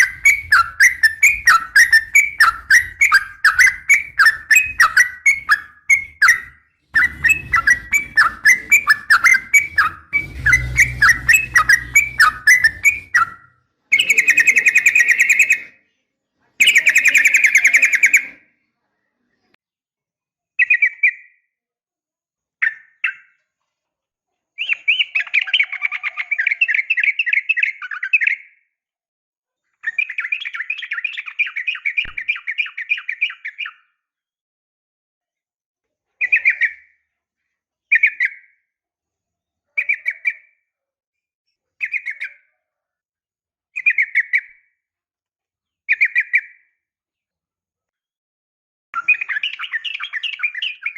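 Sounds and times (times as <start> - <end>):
bird rattling trills: 0.0 - 13.4
bird chirping: 0.0 - 15.7, 16.6 - 18.4, 29.8 - 33.9, 49.0 - 50.9
low rumble: 7.0 - 13.2.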